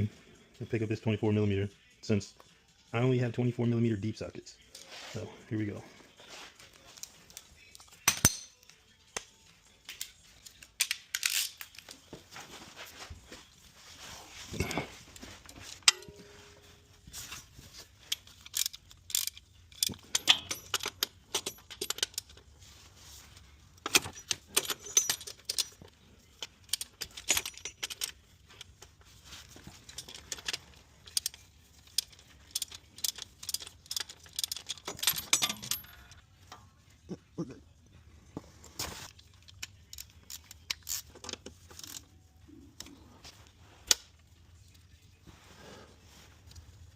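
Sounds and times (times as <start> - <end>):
metal tools clinking and rattling: 6.8 - 8.8, 14.3 - 22.6, 23.3 - 36.9, 38.6 - 43.3.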